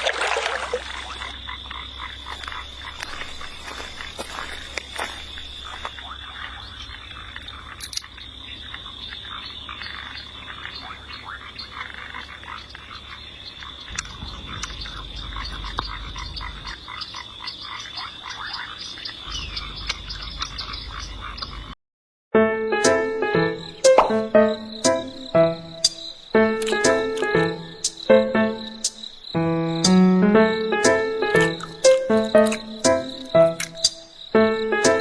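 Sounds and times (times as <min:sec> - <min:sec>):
low rumble: 0:14.0 - 0:16.7.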